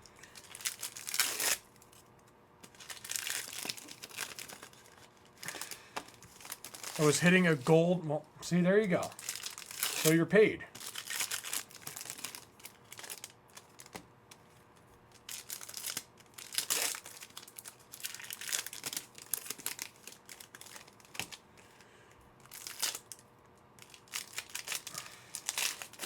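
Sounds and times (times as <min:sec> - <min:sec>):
foil wrappers tearing and crinkling: 0:00.0 - 0:07.8, 0:08.8 - 0:14.0, 0:15.1 - 0:21.8, 0:22.4 - 0:23.2, 0:23.8 - 0:26.0.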